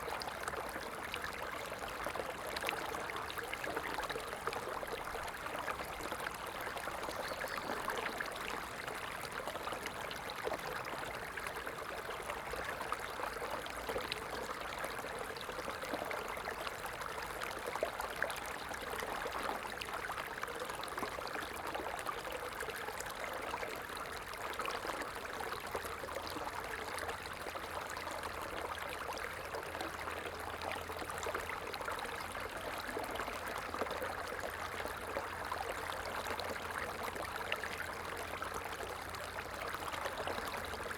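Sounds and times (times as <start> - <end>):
stream babbling: 0.0 - 20.2.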